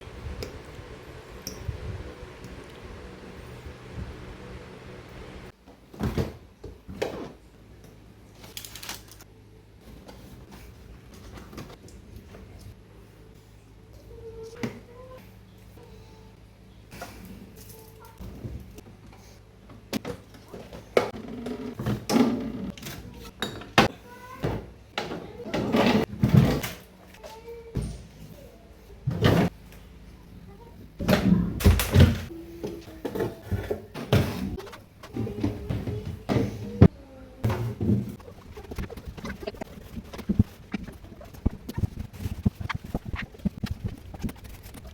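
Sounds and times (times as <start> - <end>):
low steady hum: 0.0 - 5.6
refrigerator doors and drawers clattering: 20.0 - 23.8, 24.4 - 26.9, 31.0 - 32.3.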